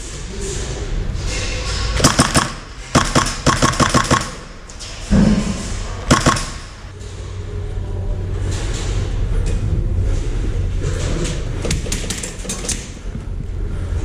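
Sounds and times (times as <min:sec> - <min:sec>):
airsoft gun firing bursts: 0:02.0 - 0:04.5, 0:06.1 - 0:06.8.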